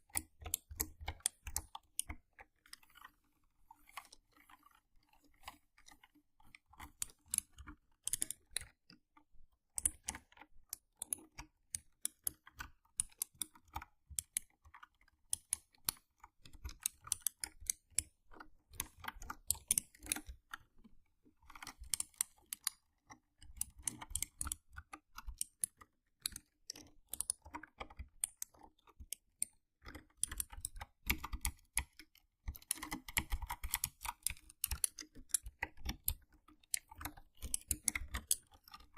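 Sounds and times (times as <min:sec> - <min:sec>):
mechanical keyboard typing: 0:23.5 - 0:38.9.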